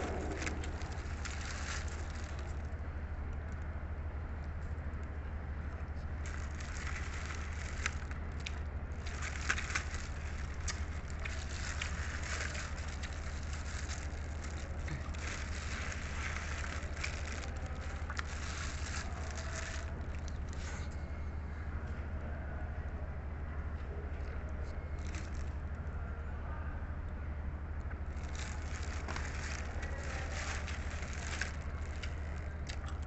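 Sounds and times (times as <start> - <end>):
crunching and chewing food: 0.0 - 2.8, 6.0 - 21.1, 24.2 - 25.8, 27.8 - 33.0
steady low hum: 0.0 - 33.0.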